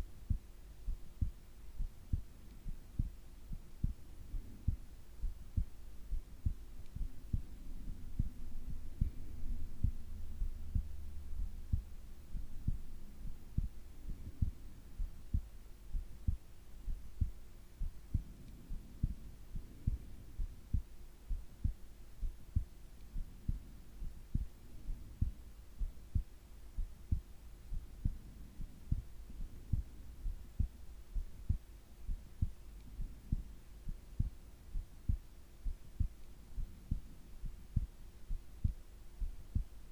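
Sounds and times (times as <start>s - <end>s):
faint steady hum: 0.0s - 39.9s
heartbeat thumps: 0.0s - 39.9s.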